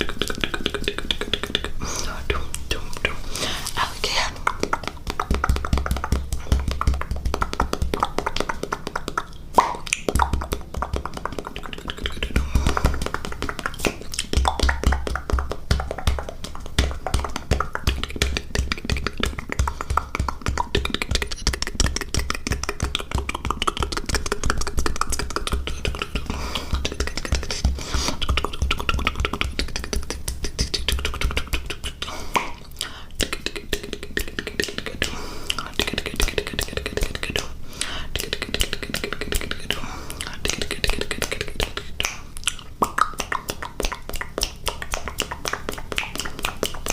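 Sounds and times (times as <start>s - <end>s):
fast mouth clicks and taps: 0.0s - 3.2s, 4.2s - 46.9s.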